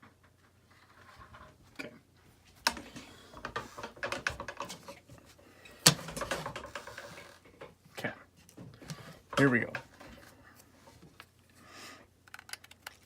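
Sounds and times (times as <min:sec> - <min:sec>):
small objects clicking and tapping: 0:12.2 - 0:13.0.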